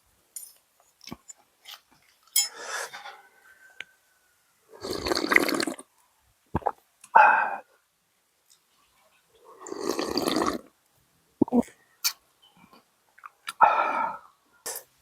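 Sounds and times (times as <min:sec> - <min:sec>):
person slurping soup: 0:04.8 - 0:05.8, 0:09.6 - 0:10.7.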